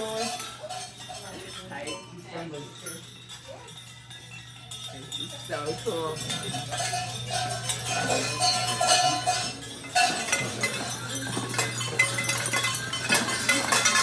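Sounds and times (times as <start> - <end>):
bells clanking and jangling: 0.0 - 14.0.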